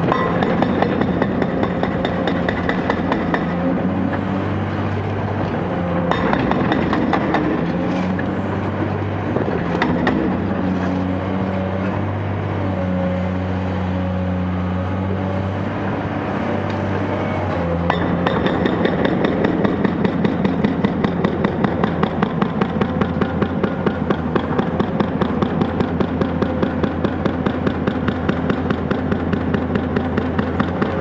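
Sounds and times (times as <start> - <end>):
excavator diesel engine under load: 0.0 - 31.0
sharp knocks: 6.1 - 7.6.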